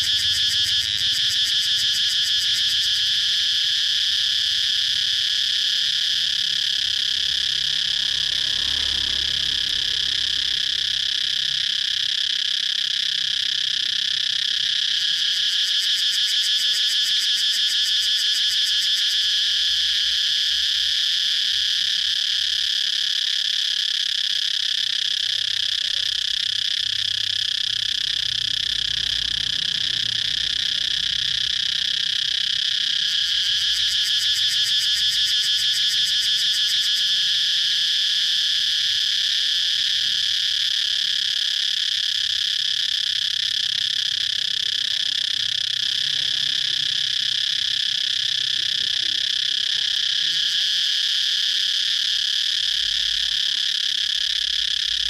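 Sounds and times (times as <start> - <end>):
cicadas droning: 0.0 - 55.0.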